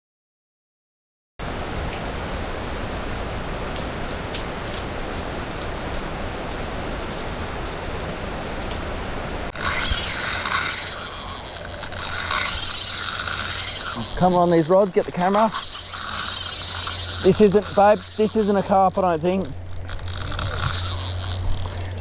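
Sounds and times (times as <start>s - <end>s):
rain falling: 1.4s - 22.0s
fishing reel clicker buzzing: 9.5s - 22.0s.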